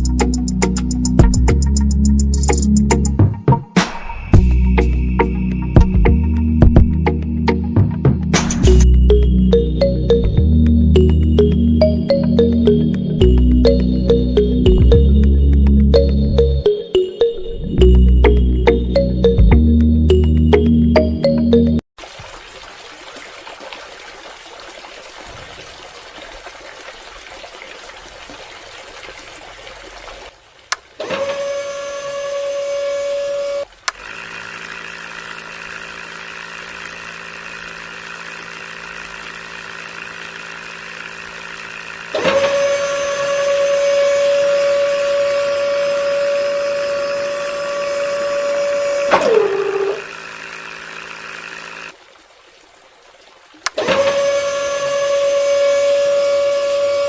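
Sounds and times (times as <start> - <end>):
low motor hum: 4.4 - 16.8, 17.4 - 21.2, 31.0 - 52.0, 53.7 - 57.0
small motor whining: 31.0 - 52.0, 53.7 - 57.0.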